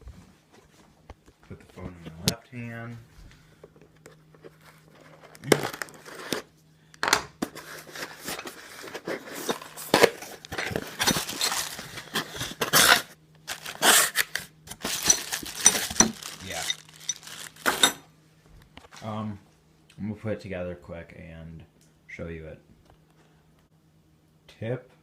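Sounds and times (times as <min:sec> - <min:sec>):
packaging crinkling and tearing: 0:05.0 - 0:06.5, 0:07.6 - 0:18.0.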